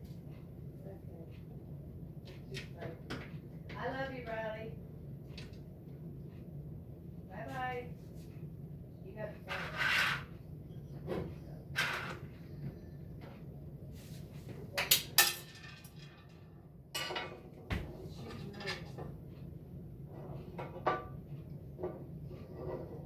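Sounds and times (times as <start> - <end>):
steady low hum: 0.0 - 23.0
metal tools clinking and knocking: 14.8 - 16.4, 17.0 - 17.5.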